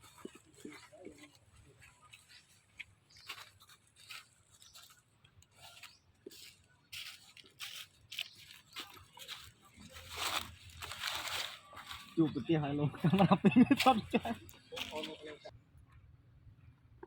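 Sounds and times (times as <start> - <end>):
rustling and crunching: 0.0 - 12.2.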